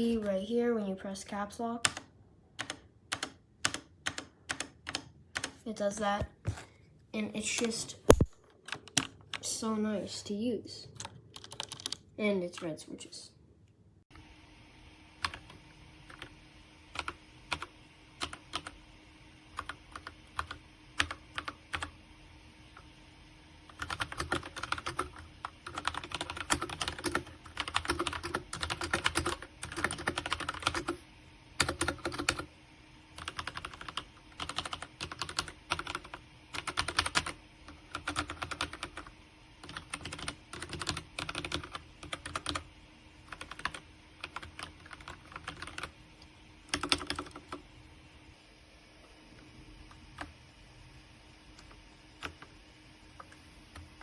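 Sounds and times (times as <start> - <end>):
typing on mechanical keyboard: 1.8 - 5.6, 7.6 - 9.4, 11.0 - 12.1, 17.0 - 18.8, 19.6 - 21.9, 23.7 - 31.0, 31.6 - 32.5, 33.2 - 42.6, 43.3 - 45.9, 46.7 - 47.6.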